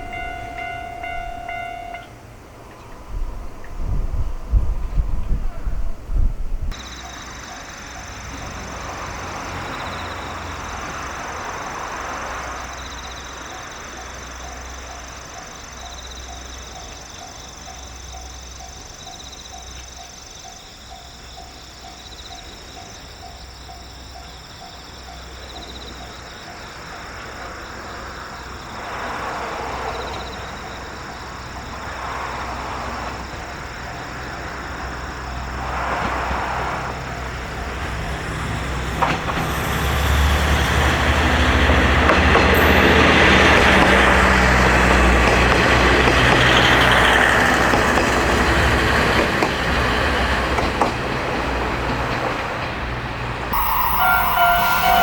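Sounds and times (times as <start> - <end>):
insects trilling: 6.8 - 35.6, 53.6 - 55.0
rushing noise: 53.5 - 55.0.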